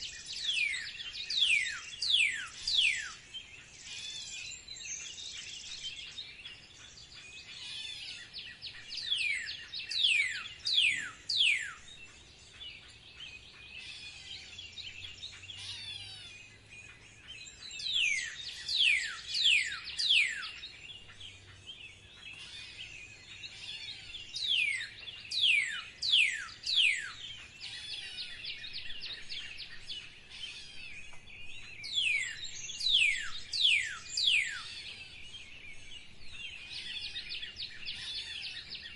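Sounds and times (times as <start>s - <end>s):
birds chirping: 0.0s - 38.9s
bird whistling downward notes: 9.2s - 11.8s, 24.4s - 27.2s, 31.8s - 34.8s.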